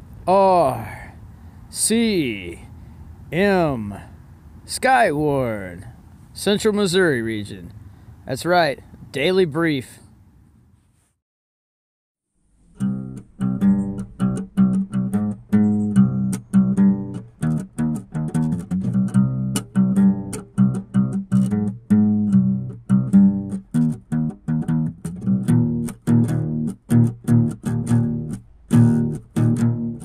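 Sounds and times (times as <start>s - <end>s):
plucked-string instrumental music: 12.5s - 30.0s.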